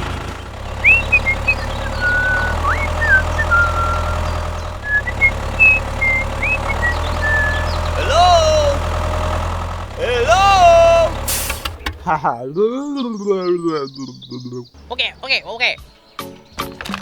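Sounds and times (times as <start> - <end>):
tractor engine running: 0.0 - 12.4
high chirping tones: 0.6 - 8.9.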